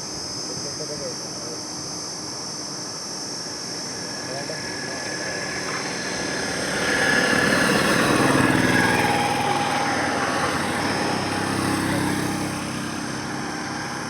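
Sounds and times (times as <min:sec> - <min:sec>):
steady road traffic: 0:00.0 - 0:14.0
motor vehicle passing: 0:06.0 - 0:14.0.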